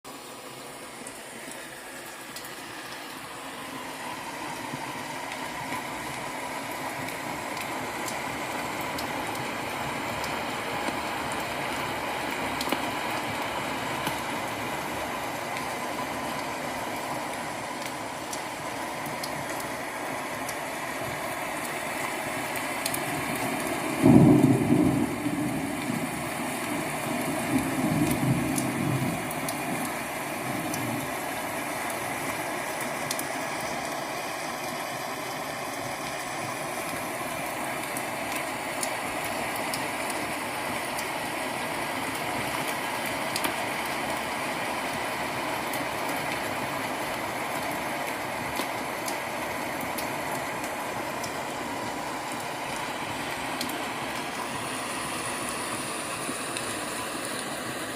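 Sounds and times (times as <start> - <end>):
steady rain: 0.0 - 57.9
thunderclap rumbling: 23.6 - 31.1.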